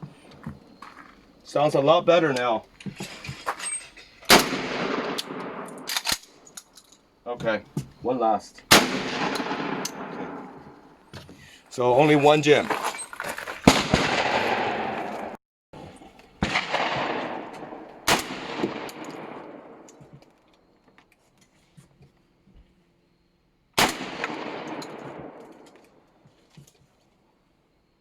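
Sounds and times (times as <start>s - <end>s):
shotgun shots with echo: 4.3s - 6.2s, 8.7s - 10.9s, 13.7s - 15.4s, 16.4s - 19.9s, 23.8s - 25.8s.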